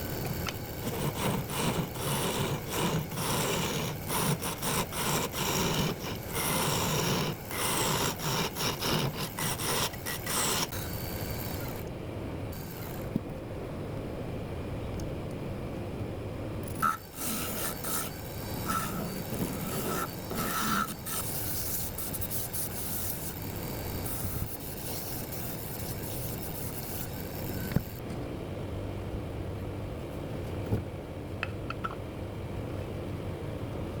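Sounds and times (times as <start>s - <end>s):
lathe running hum: 0.0s - 11.9s, 16.7s - 28.0s
abrasive sanding wood on lathe: 0.1s - 11.8s, 16.8s - 28.0s.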